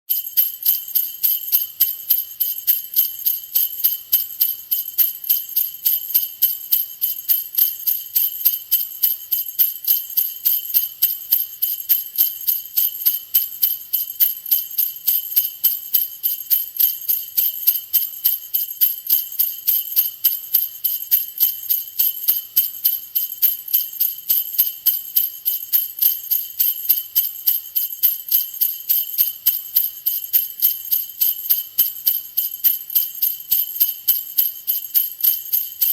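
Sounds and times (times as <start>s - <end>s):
sleigh bells jingling: 0.1s - 35.9s.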